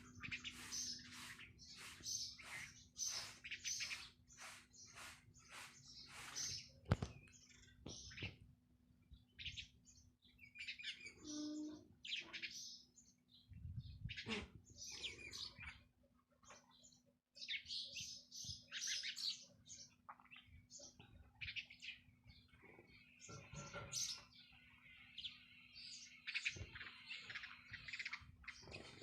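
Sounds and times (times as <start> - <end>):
small birds chirping: 0.0 - 29.0.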